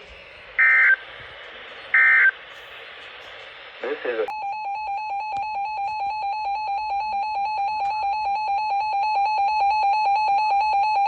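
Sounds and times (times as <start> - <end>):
rapid pulsing electronic beep: 4.3 - 11.0.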